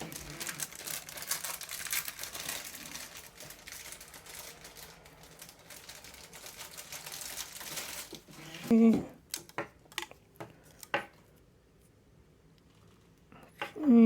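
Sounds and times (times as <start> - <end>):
hands rustling plastic parts: 0.0 - 11.3.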